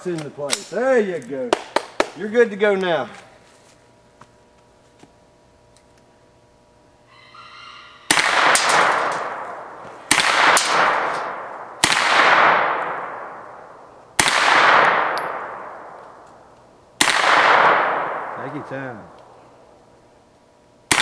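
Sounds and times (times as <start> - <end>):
gunshots echoing: 8.1 - 19.4.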